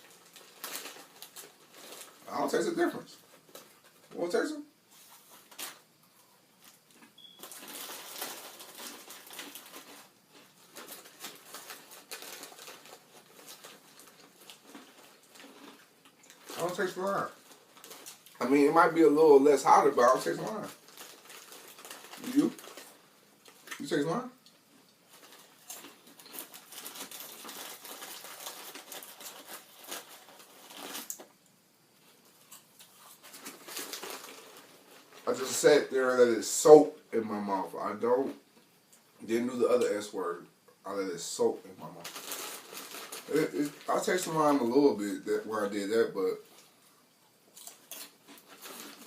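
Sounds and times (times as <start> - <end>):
chip bag crackling: 0.0 - 4.6, 6.6 - 31.4, 32.0 - 36.8, 41.2 - 46.7, 47.5 - 49.0
crunchy chips being chewed: 6.6 - 18.7, 19.6 - 23.9, 24.6 - 31.3, 32.0 - 35.6, 42.0 - 44.3, 47.5 - 49.0.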